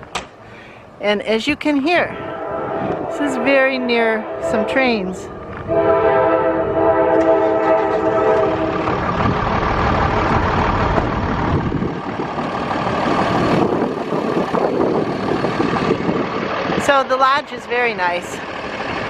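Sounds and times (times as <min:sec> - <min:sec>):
train running past: 0:01.5 - 0:19.0
train horn chord: 0:02.1 - 0:09.0.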